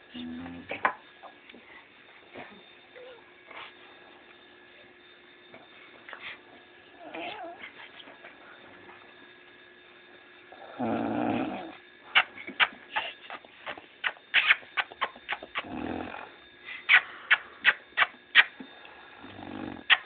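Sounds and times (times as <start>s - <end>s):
person snoring: 10.6s - 11.7s, 15.6s - 16.4s, 19.2s - 19.9s.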